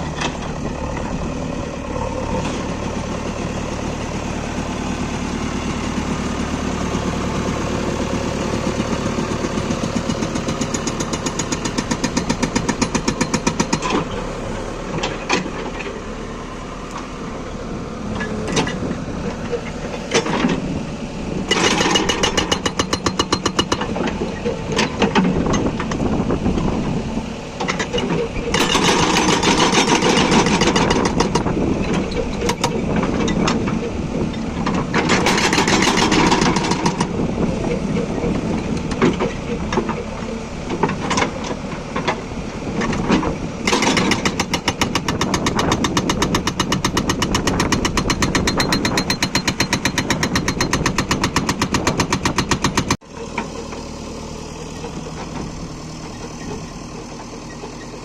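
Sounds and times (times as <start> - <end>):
diesel engine running: 0.0 - 58.0
hydraulic breaker hammering stone: 10.5 - 14.0, 21.5 - 24.0, 28.6 - 31.5, 35.0 - 37.2, 43.7 - 53.0.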